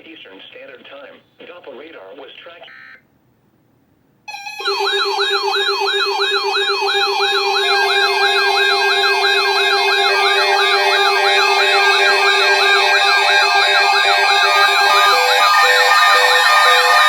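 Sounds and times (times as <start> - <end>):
high-low siren tones: 4.3 - 17.0
yelping emergency siren: 4.3 - 17.0.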